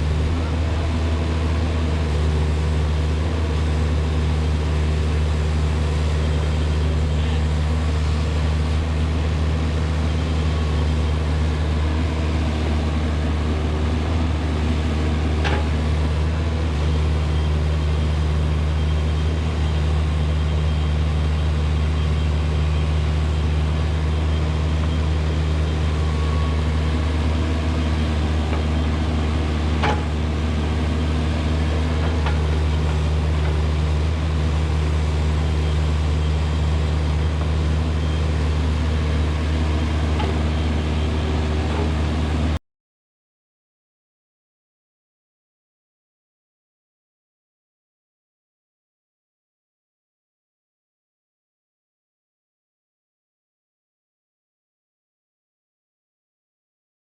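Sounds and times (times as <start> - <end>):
diesel engine droning: 0.0 - 42.6.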